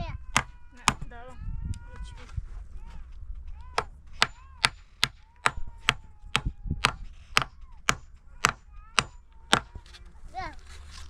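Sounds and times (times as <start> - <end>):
chopping strikes: 3.7 - 9.9.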